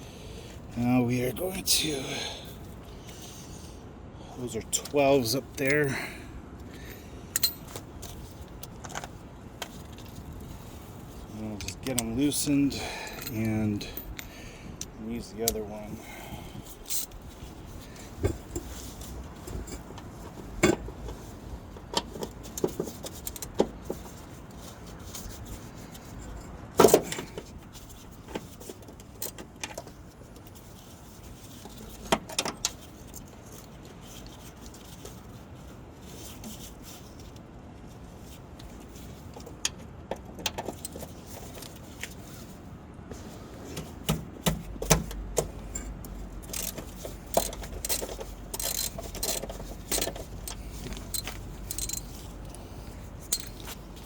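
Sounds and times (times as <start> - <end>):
metal hand tools clinking: 12.7 - 14.4, 45.7 - 52.6, 53.2 - 53.8.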